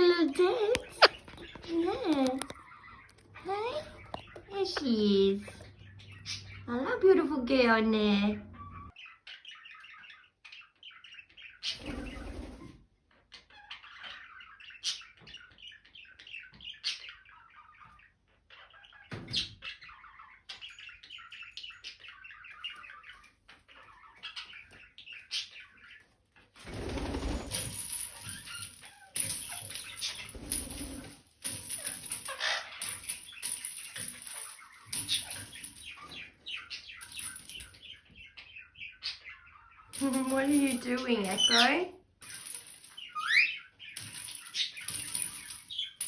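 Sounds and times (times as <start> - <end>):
parrots chirping and chattering: 0.0 - 46.0
wings flapping and rustling: 26.6 - 36.2, 44.0 - 46.0.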